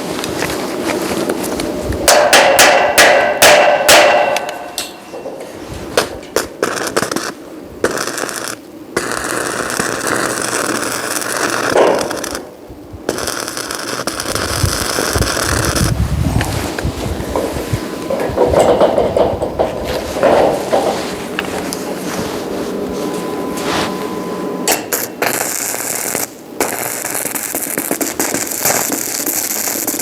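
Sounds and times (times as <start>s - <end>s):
steady hissing noise: 0.0s - 30.0s
metal knocks on steel frame: 2.1s - 5.5s, 18.1s - 21.0s.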